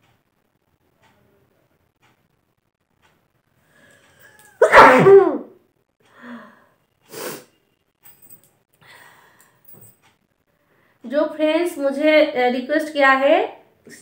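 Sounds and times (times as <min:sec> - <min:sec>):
woman sneezing: 0:04.6 - 0:05.5
quiet breathy sounds: 0:06.0 - 0:11.1.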